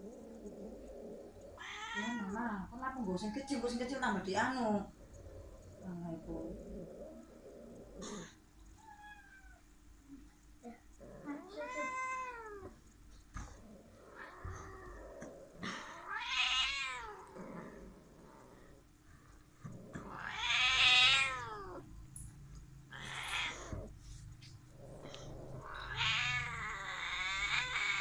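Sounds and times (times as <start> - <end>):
cats yowling: 0.0 - 2.6, 8.8 - 9.7, 11.2 - 13.0, 14.0 - 17.4, 20.0 - 21.9, 22.9 - 23.9, 24.8 - 28.0.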